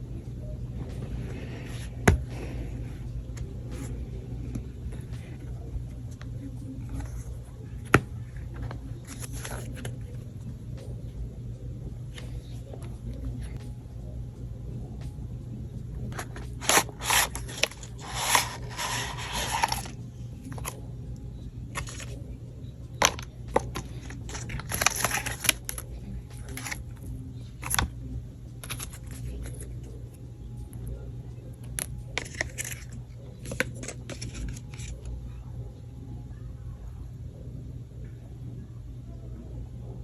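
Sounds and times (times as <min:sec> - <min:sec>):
packaging rustling: 0:16.2 - 0:20.8, 0:21.7 - 0:22.2, 0:23.0 - 0:27.0.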